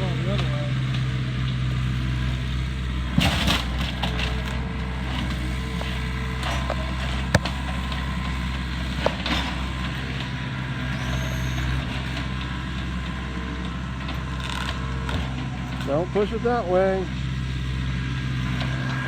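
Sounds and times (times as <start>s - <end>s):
heavy machine engine running: 0.0s - 19.0s
wood cracking: 3.1s - 9.6s, 12.2s - 16.0s.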